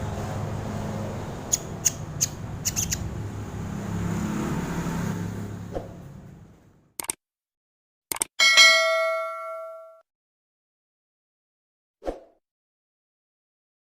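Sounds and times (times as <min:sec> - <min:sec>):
bird chirping: 0:01.4 - 0:03.2.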